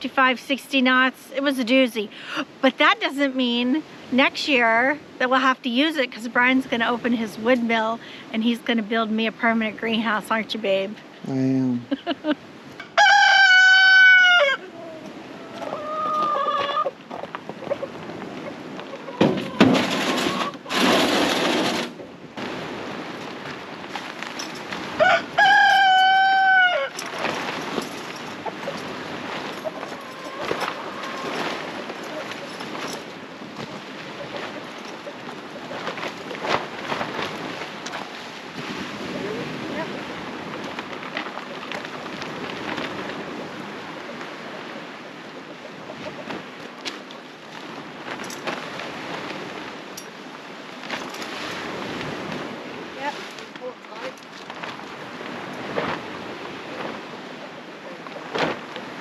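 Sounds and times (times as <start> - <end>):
wind: 0.0 - 59.0
rain: 2.0 - 3.0, 7.4 - 8.3, 11.0 - 59.0
rooster crowing: 12.8 - 16.9, 25.0 - 27.0.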